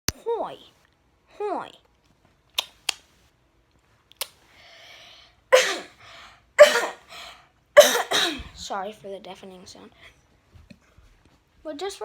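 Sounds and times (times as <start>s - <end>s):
person coughing harshly: 5.6s - 6.0s, 6.6s - 7.1s, 7.8s - 8.6s
breath in: 7.0s - 7.5s.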